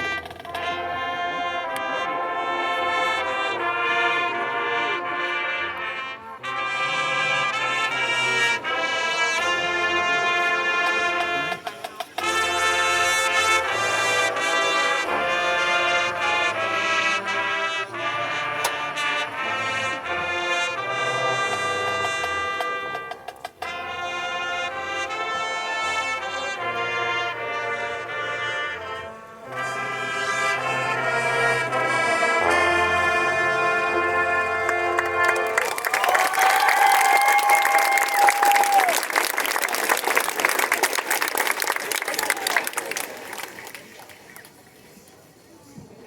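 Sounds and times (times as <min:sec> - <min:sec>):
brass band slow chords: 0:00.0 - 0:36.6.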